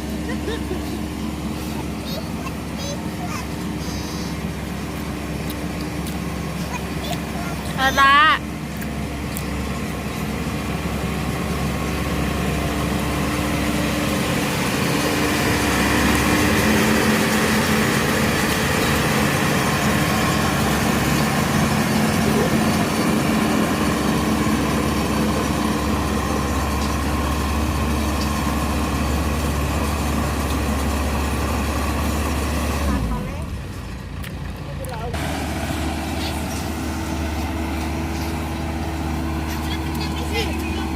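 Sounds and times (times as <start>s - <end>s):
combine harvester engine drone: 0.0s - 40.9s.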